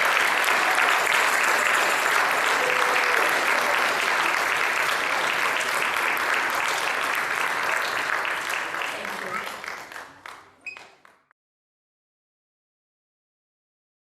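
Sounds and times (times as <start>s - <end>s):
audience cheering and shouting: 0.0s - 3.9s
audience clapping: 0.0s - 11.4s.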